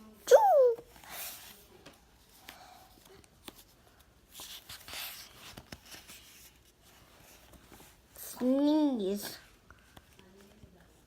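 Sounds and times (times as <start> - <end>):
paper rustling: 2.5 - 8.6.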